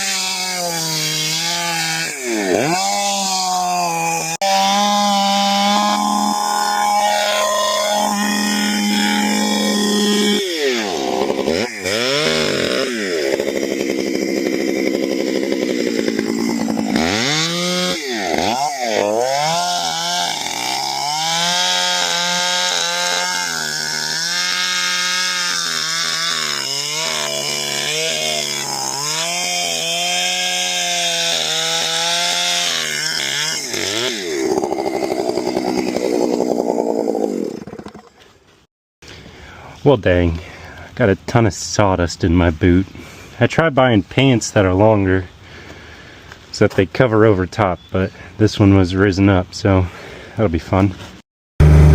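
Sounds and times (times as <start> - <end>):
chainsaw cutting wood: 0.0 - 38.3, 51.6 - 51.9.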